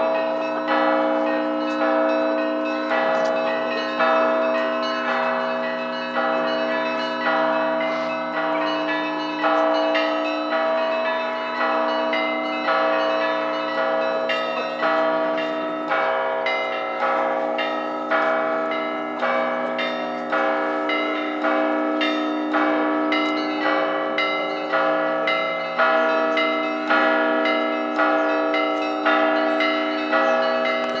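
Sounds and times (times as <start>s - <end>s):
church bells pealing: 0.0s - 31.0s.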